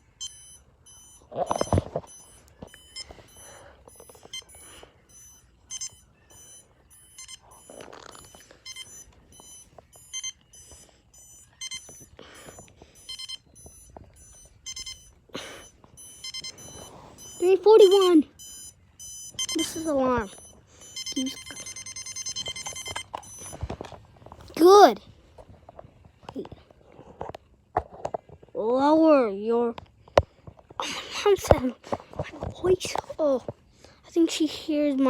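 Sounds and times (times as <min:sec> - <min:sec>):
alarm clock beeping: 0:00.0 - 0:25.0.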